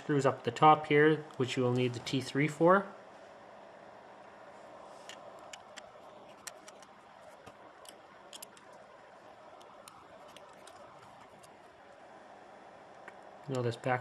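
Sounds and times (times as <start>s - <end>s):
small screwdriver and parts clicking: 7.8s - 8.7s.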